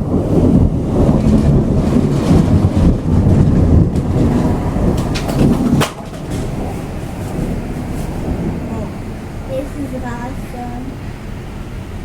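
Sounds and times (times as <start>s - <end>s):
thunder rumbling: 0.0s - 12.0s.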